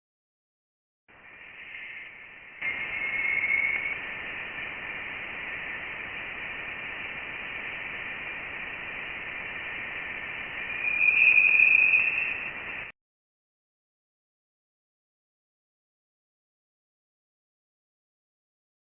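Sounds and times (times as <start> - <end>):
steady hiss: 1.1 - 12.9
thin whistling tones: 1.1 - 12.9.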